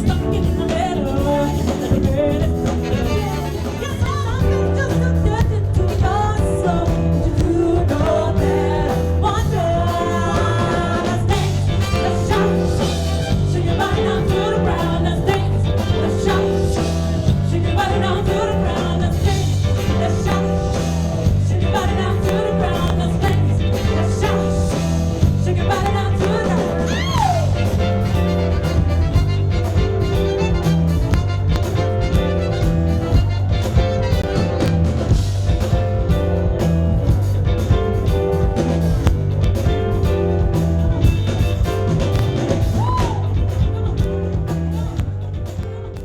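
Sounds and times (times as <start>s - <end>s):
person singing lead vocal: 0.0s - 28.7s
band playing: 0.0s - 46.0s
repeating bass line: 0.0s - 46.0s.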